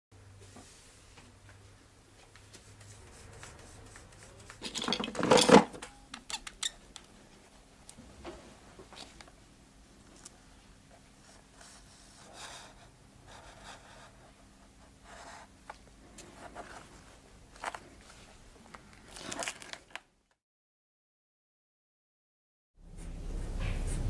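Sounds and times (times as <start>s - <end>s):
rustling and scraping: 2.2s - 5.8s, 22.9s - 24.0s
faint steady hum: 22.8s - 24.0s.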